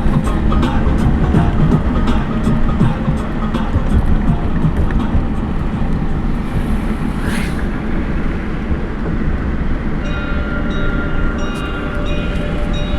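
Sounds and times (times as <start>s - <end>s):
vehicle rumble: 0.0s - 12.9s
rising and falling hiss: 5.0s - 10.4s.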